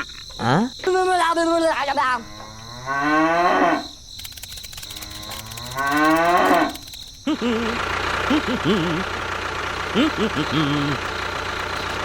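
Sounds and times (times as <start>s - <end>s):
cow mooing: 2.2s - 3.8s, 5.6s - 6.8s.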